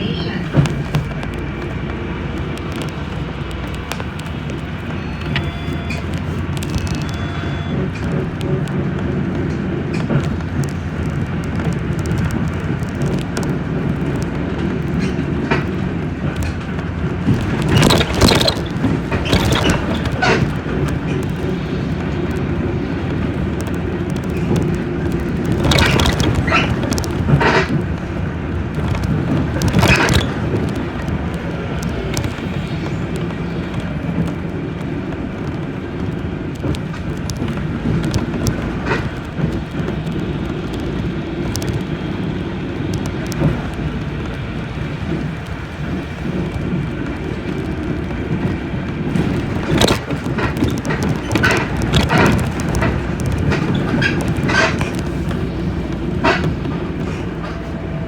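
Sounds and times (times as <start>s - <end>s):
bus engine and road noise: 0.0s - 58.0s
sharp rattles and knocks: 7.8s - 35.6s, 42.7s - 58.0s.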